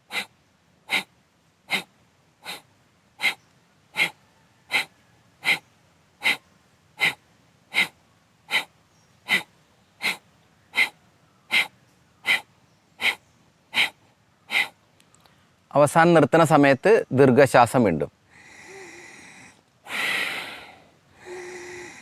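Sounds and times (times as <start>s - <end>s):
forceful nasal exhalations: 0.0s - 0.3s, 0.9s - 1.1s, 1.7s - 3.4s, 4.0s - 6.4s, 7.0s - 10.2s, 10.8s - 14.8s, 18.3s - 22.0s.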